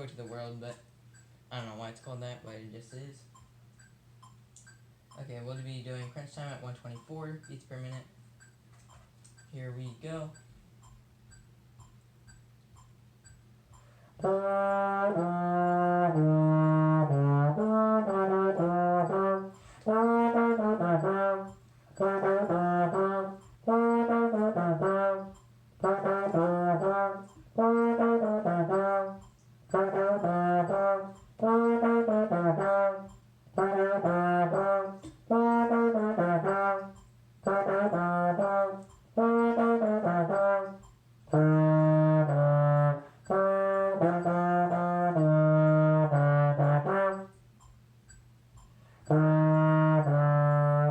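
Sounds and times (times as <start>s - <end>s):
solo trombone playing: 14.2s - 47.4s, 49.1s - 50.9s.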